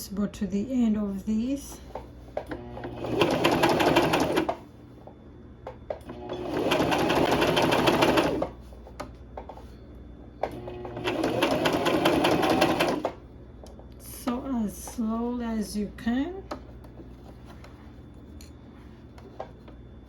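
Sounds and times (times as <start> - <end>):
sewing machine stitching: 2.5 - 4.6, 6.1 - 8.6, 10.5 - 13.2.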